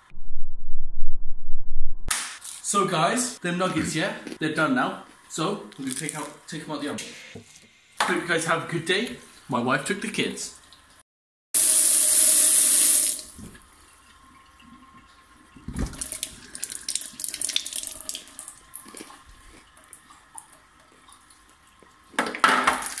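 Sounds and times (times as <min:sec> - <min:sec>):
tap running into sink: 0:15.6 - 0:16.3.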